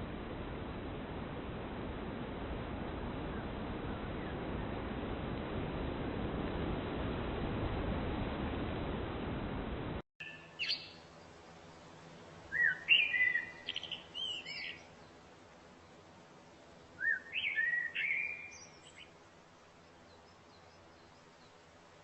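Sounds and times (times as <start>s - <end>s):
steady hiss: 0.0s - 22.0s
bird call: 10.2s - 11.0s, 12.5s - 14.9s, 17.0s - 19.1s
songbird whistled song: 10.2s - 11.2s, 12.5s - 15.2s, 17.0s - 19.2s, 19.8s - 21.6s.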